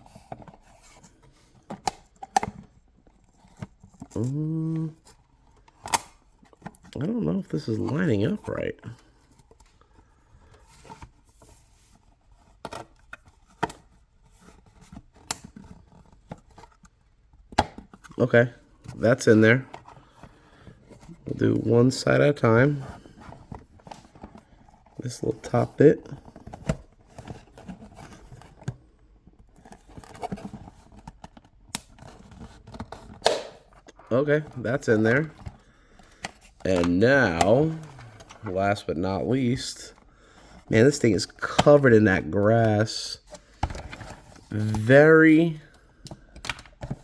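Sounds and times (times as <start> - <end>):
plastic parts clicking: 46.0 - 47.0.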